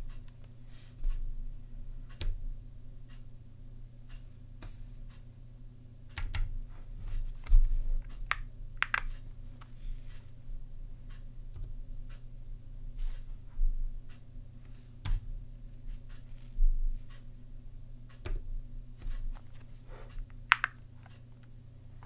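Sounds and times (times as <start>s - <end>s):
steady low hum: 0.0s - 22.0s
keyboard key clicks: 8.2s - 9.2s, 20.2s - 20.8s.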